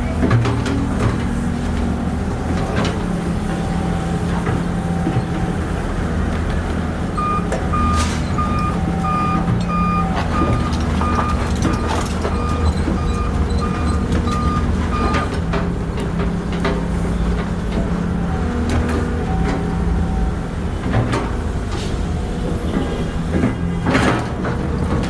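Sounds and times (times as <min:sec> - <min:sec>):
heavy vehicle engine running: 0:00.0 - 0:25.0
reversing alarm beeping: 0:07.2 - 0:15.4.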